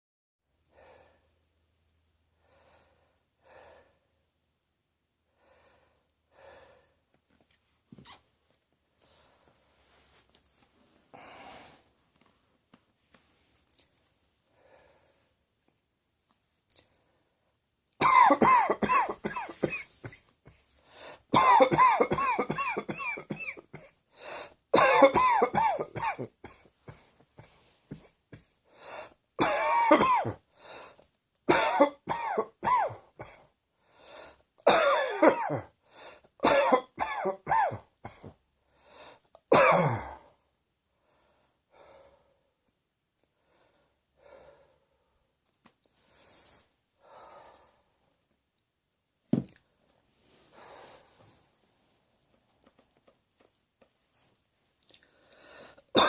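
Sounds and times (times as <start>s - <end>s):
person breathing: 0.7s - 1.4s, 2.3s - 4.1s, 5.3s - 7.0s, 11.1s - 12.0s, 14.4s - 15.4s, 20.7s - 21.3s, 24.1s - 24.6s, 28.7s - 29.2s, 30.5s - 31.1s, 33.8s - 34.5s, 35.8s - 36.3s, 38.6s - 39.4s, 40.9s - 42.6s, 43.3s - 45.4s, 46.0s - 48.2s, 50.2s - 51.6s, 54.9s - 55.9s
hissing breath in: 11.2s - 11.9s, 24.2s - 24.6s
person coughing: 18.0s - 20.7s, 21.3s - 24.0s, 24.8s - 27.1s, 29.4s - 30.4s, 31.5s - 33.4s, 34.7s - 35.7s, 36.4s - 38.4s, 39.5s - 40.3s.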